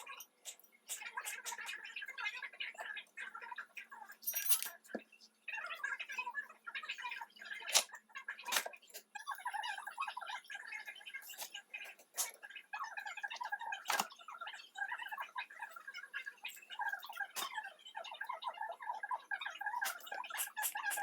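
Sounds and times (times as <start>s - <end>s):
sped-up high-pitched chatter: 0.0s - 21.0s
knife chopping clicks: 13.9s - 14.1s.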